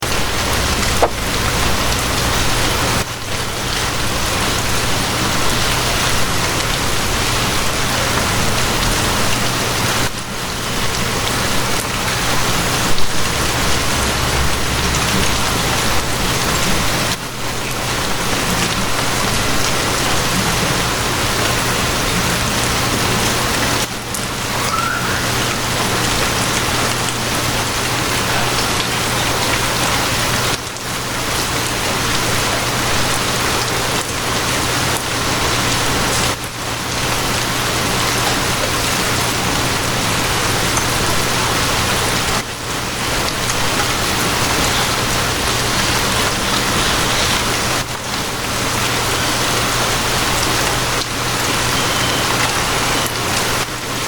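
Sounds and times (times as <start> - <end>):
rain falling on a surface: 0.0 - 54.0
low steady rumble: 0.1 - 4.1.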